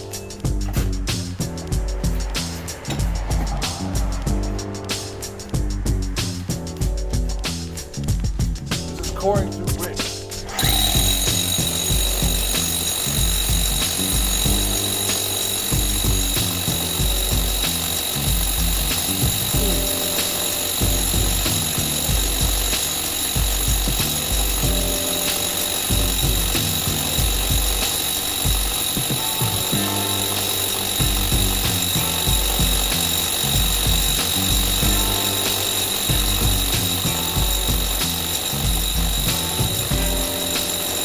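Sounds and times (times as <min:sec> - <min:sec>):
background music with steady beat: 0:00.0 - 0:41.0
core drill grinding through brick: 0:10.4 - 0:41.0.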